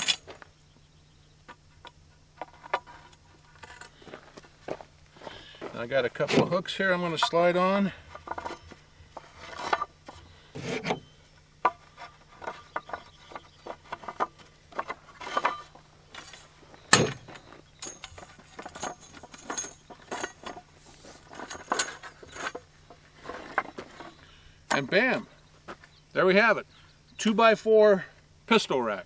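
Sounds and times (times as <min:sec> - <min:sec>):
metal hooks scraping on wood: 0:00.0 - 0:00.4, 0:06.2 - 0:25.2.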